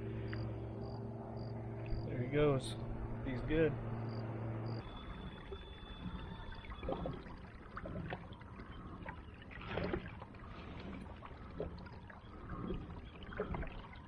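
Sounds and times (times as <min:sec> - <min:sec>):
water splashing and trickling: 0:04.7 - 0:14.0.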